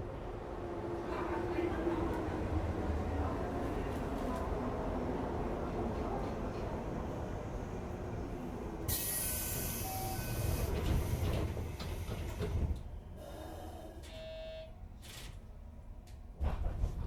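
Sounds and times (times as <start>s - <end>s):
air hiss of train doors: 8.9s - 14.0s.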